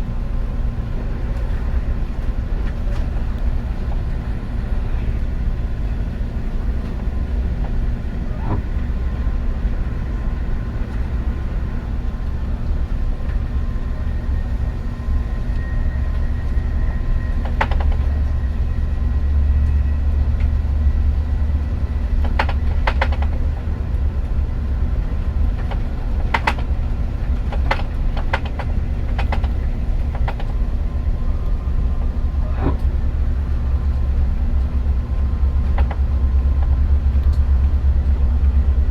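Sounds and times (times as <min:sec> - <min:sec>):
faint whining tones: 0:00.0 - 0:38.9
train rumbling on rails: 0:00.0 - 0:38.9
sharp clicks and knocks: 0:17.4 - 0:18.2, 0:22.2 - 0:23.4, 0:25.6 - 0:26.7, 0:27.3 - 0:30.6.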